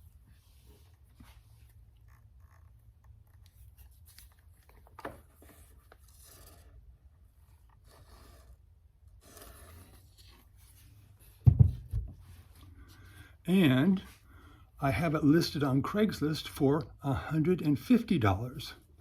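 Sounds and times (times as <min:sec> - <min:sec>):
faint rustling and rubbing: 0:00.0 - 0:13.1
small knock: 0:11.4 - 0:12.2.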